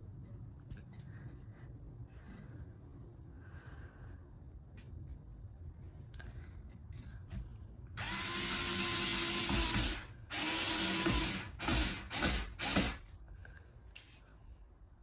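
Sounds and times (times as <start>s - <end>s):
cordless drill driving a screw: 8.0s - 13.1s.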